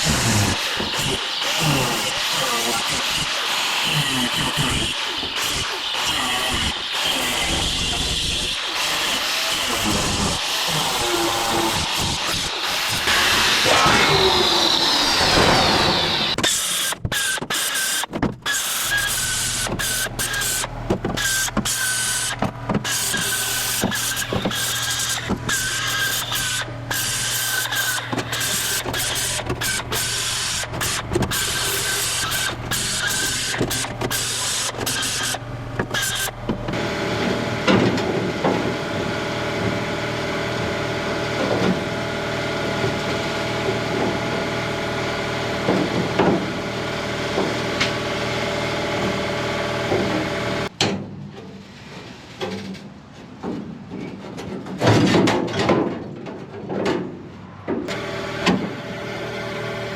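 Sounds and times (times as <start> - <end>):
power tool cutting sheet steel: 0.0 - 50.7
steady machine hum: 18.8 - 50.7.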